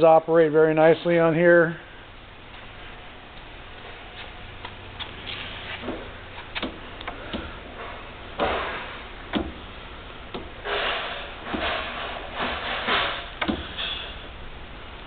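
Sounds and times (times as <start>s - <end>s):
knocks: 9.3s - 9.6s.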